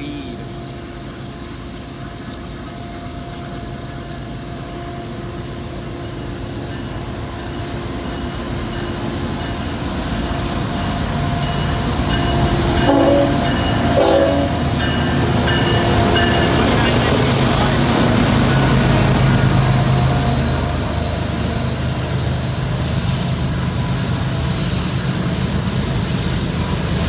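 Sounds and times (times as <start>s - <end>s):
diesel freight train: 0.0s - 27.0s
locomotive air horn: 12.8s - 14.8s.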